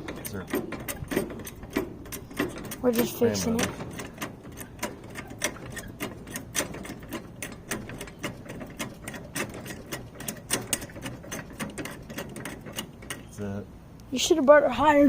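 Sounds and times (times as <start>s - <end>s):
jack pumping metallic clicks: 0.0s - 14.1s.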